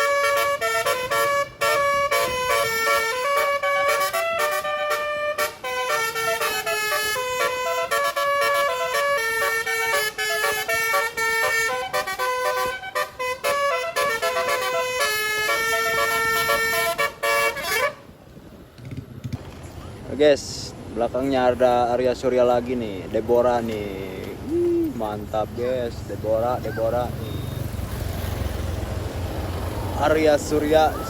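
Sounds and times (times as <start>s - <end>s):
bus melody horn playing tune: 0.0s - 18.2s.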